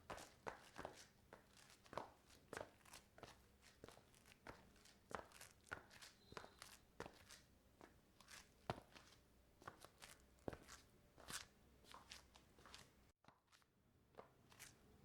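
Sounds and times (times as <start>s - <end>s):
slipper footsteps on marble floor: 0.2s - 13.1s.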